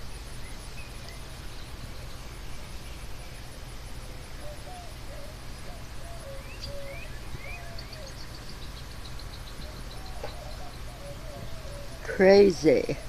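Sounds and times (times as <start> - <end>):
birds chirping: 0.0 - 13.0.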